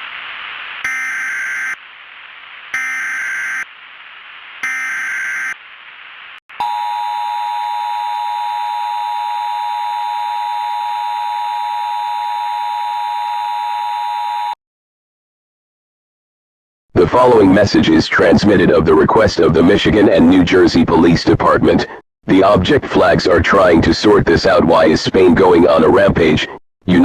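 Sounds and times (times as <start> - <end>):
static hiss: 0.0 - 6.4
screeching data bursts: 0.8 - 1.8, 2.7 - 3.7, 4.6 - 5.6
two-tone attention signal: 0.8 - 1.8, 2.7 - 3.6, 4.6 - 5.6, 6.6 - 14.6.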